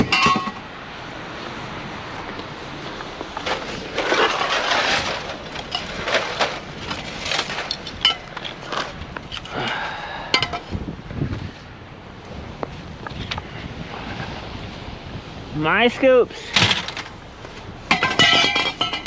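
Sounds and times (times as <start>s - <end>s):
scrap metal clanking: 0.0s - 0.6s, 3.4s - 10.7s, 16.4s - 19.0s.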